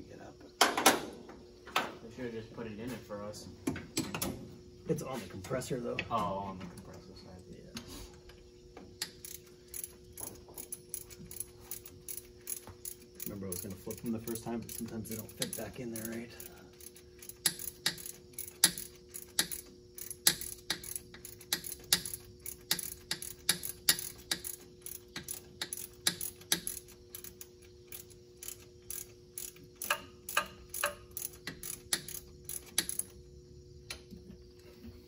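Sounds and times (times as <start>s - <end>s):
ratchet wrench clicking: 9.0s - 33.2s.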